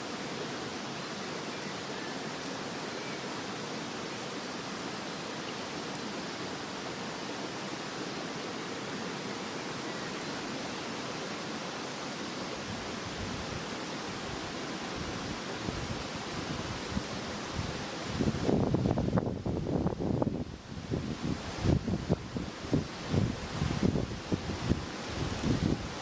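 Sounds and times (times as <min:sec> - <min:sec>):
stream rushing: 0:00.0 - 0:26.0
wind rumble on microphone: 0:12.6 - 0:26.0.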